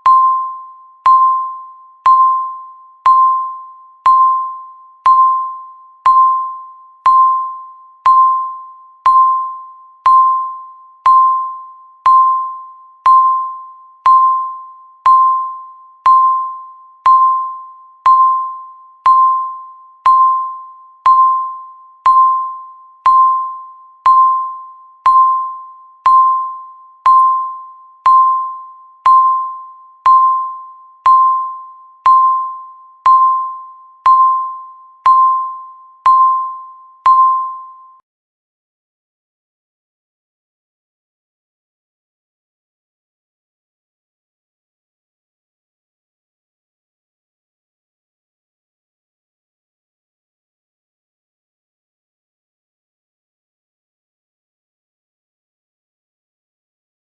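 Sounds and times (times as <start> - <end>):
countdown timer beeping: 0.0 - 38.0.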